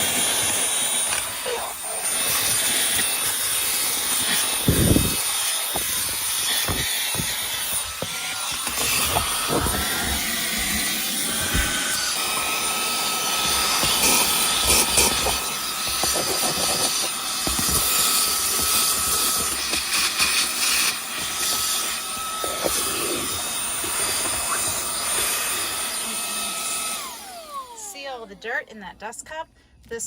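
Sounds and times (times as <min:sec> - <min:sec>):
handheld vacuum whining: 0:00.0 - 0:28.7
knocks and clatter on surfaces: 0:04.7 - 0:09.8.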